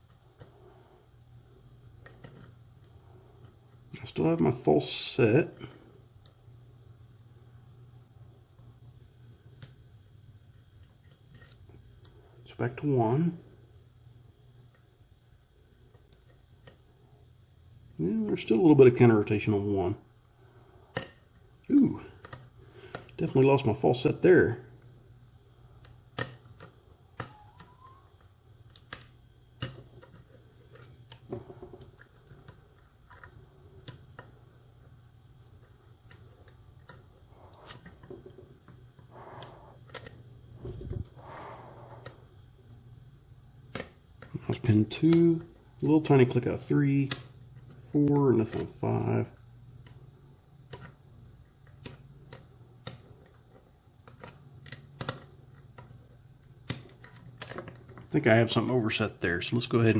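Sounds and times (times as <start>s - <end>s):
faint low hum: 0.0s - 59.9s.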